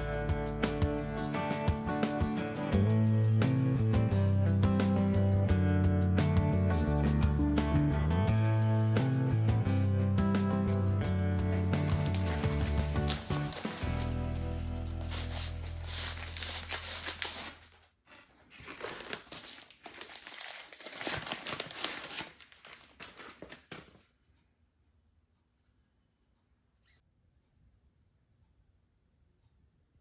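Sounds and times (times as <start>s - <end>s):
packaging crinkling and tearing: 11.8s - 24.0s.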